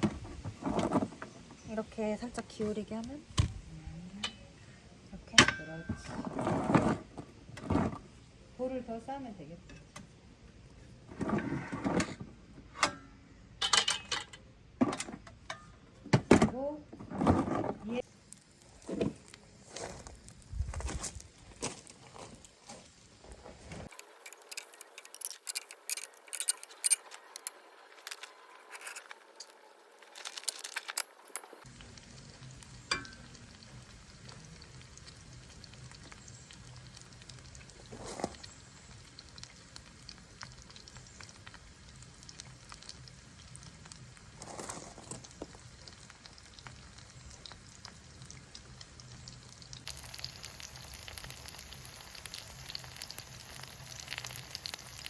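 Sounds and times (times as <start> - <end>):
food sizzling in a pan: 18.0 - 20.5, 31.1 - 55.0
clicks and clinks: 24.3 - 29.1.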